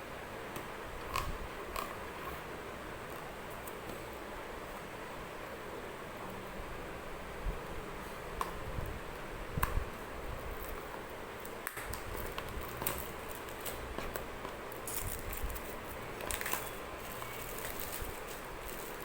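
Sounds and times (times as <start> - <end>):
packaging clicks and crackles: 11.4 - 19.0.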